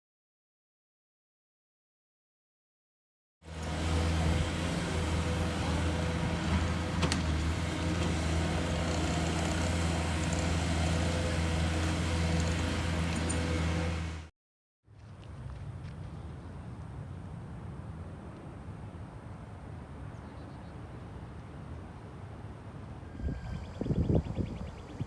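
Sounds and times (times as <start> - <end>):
engine running steadily: 3.5 - 14.3, 23.0 - 25.0.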